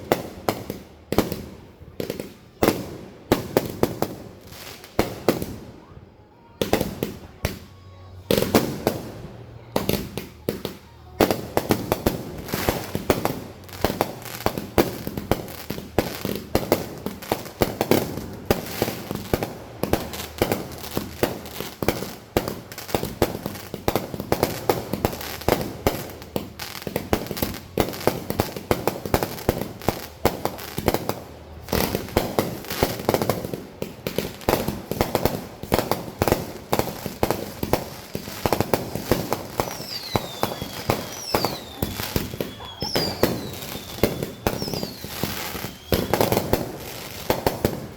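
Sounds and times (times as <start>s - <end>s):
fireworks banging and crackling: 0.0s - 47.9s
falling firework whistles: 38.2s - 47.3s.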